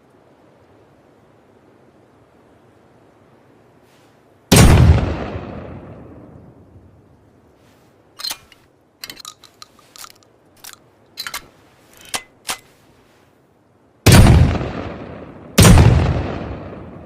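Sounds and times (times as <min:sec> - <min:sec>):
shotgun shots echoing: 0:04.5 - 0:05.8, 0:14.1 - 0:17.0
metallic gun clicks and clacks: 0:08.2 - 0:12.7.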